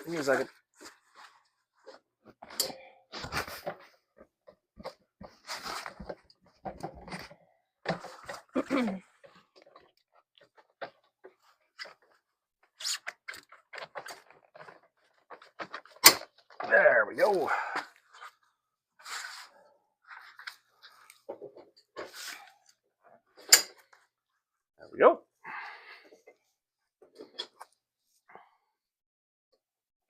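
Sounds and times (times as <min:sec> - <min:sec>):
rustling and scraping: 0:00.0 - 0:17.4, 0:18.0 - 0:24.1.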